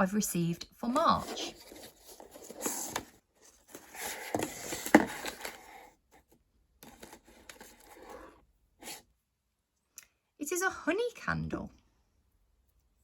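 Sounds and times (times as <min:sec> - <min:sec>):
cardboard packaging rustling: 0:00.9 - 0:06.2, 0:06.8 - 0:08.4.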